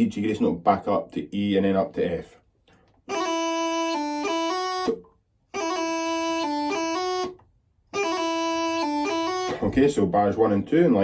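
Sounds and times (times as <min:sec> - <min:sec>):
bagpipe chanter playing: 0:03.0 - 0:09.8.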